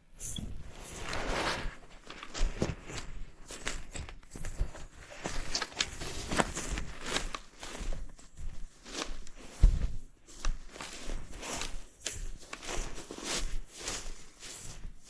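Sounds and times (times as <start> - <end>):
footsteps through undergrowth: 0.4 - 15.0.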